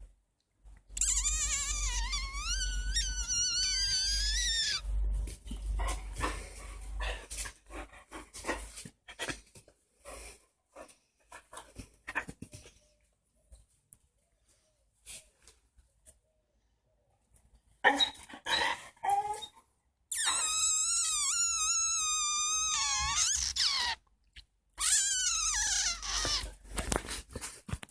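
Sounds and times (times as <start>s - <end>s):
puppy whining: 1.0s - 4.9s, 20.2s - 24.0s, 24.8s - 26.6s.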